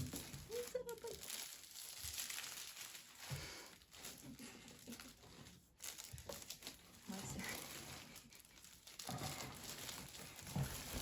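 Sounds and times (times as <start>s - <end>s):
packaging rustling and crinkling: 0.0s - 11.0s.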